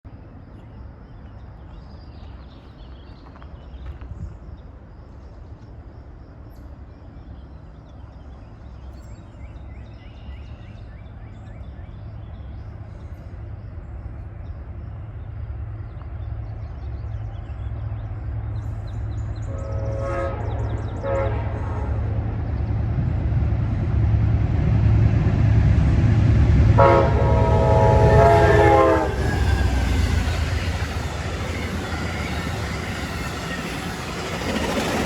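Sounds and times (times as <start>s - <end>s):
diesel locomotive rumble: 5.8s - 35.0s
birds chirping: 6.6s - 35.0s.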